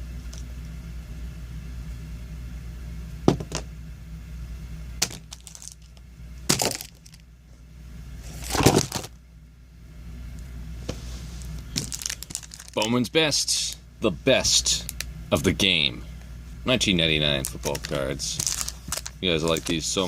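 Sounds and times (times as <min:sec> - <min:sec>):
low hum: 0:00.0 - 0:20.0
packaging crinkling: 0:05.0 - 0:07.2, 0:11.5 - 0:13.1, 0:17.4 - 0:20.0.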